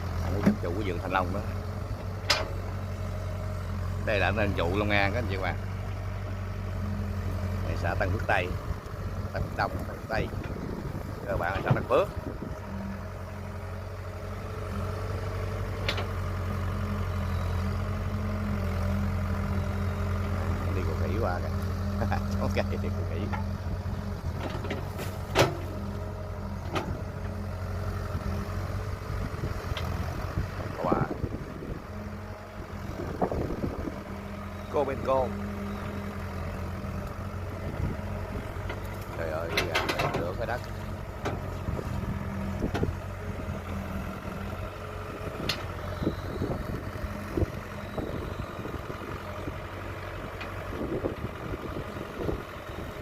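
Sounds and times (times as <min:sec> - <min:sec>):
excavator diesel engine running: 0:00.0 - 0:53.0
machine knocks and clunks: 0:24.4 - 0:25.7.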